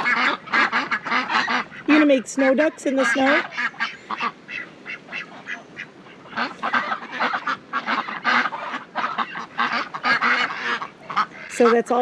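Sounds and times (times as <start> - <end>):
ducks quacking: 0.0 - 12.0.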